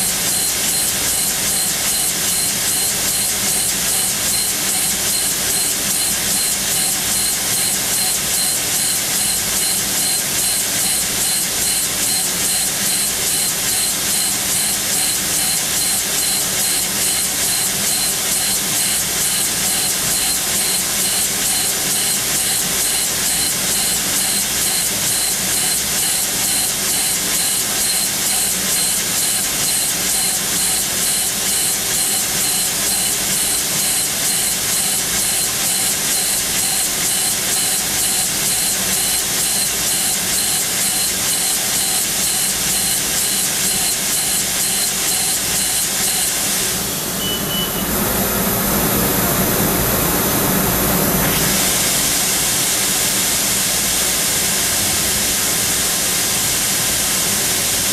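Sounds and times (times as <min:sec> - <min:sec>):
drill spindle hum and hiss: 0:00.0 - 0:57.9
short high tone: 0:47.1 - 0:47.9.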